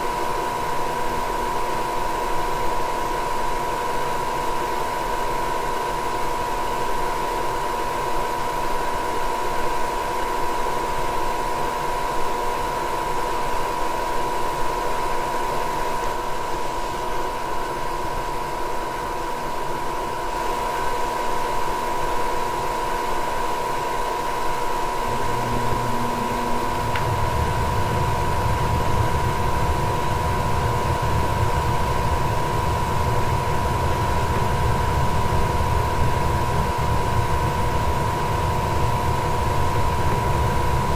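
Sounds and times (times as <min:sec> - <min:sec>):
low burner rumble: 0:24.7 - 0:40.9
furnace motor whining: 0:24.8 - 0:35.5
brief hum: 0:24.9 - 0:32.0.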